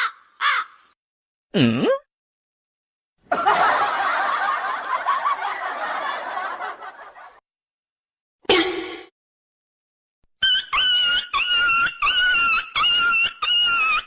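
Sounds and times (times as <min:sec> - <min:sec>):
group of people laughing: 0:03.2 - 0:07.4.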